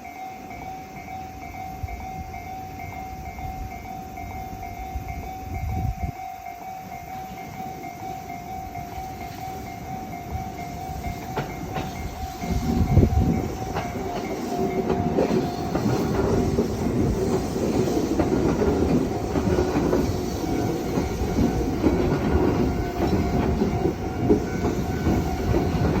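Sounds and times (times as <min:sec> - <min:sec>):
electric train passing: 0:00.0 - 0:26.0
level-crossing warning bell ringing: 0:00.0 - 0:26.0
wheels clacking over rail joints: 0:08.8 - 0:26.0.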